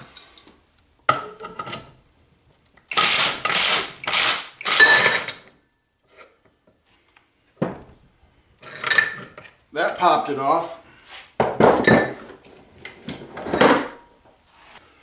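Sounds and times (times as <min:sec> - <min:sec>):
ratchet wrench cranking: 0:02.9 - 0:05.2.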